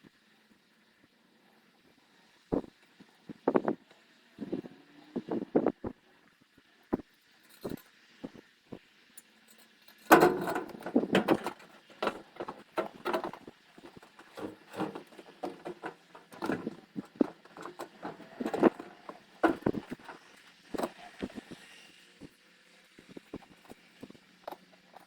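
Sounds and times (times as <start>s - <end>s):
objects knocking and rattling: 9.9s - 21.5s.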